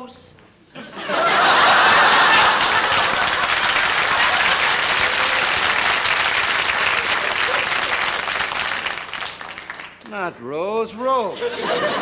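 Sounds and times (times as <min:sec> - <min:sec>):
audience applauding: 0:01.2 - 0:10.2.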